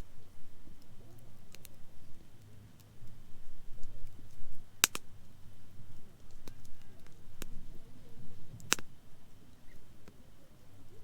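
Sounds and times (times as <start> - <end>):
campfire crackling: 0.0 - 11.0
sharp fire pops: 3.8 - 5.1, 8.6 - 8.9.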